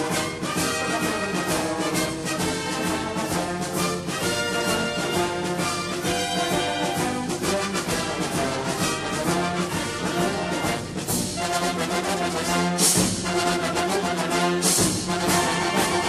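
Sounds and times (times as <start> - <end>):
orchestral music led by brass: 0.0 - 16.0.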